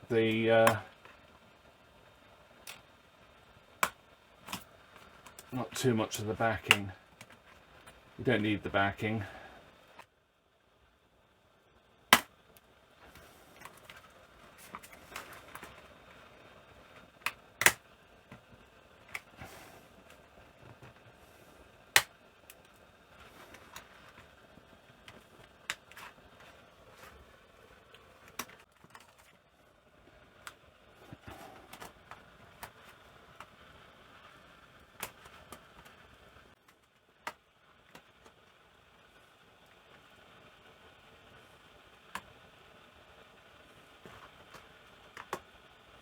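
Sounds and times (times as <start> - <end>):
plastic fixings snapping: 17.2 - 17.8.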